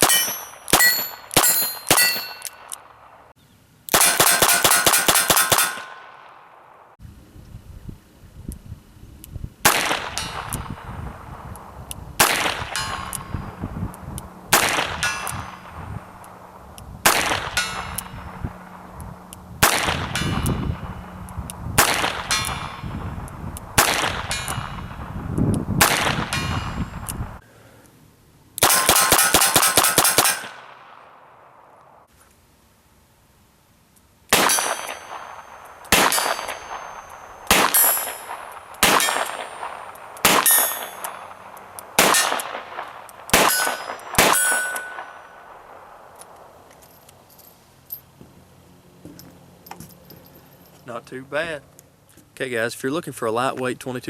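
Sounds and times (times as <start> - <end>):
steel plate clanging: 0.0 - 2.6, 4.0 - 6.0, 15.0 - 15.7, 28.7 - 30.6, 34.5 - 41.3, 43.4 - 45.2.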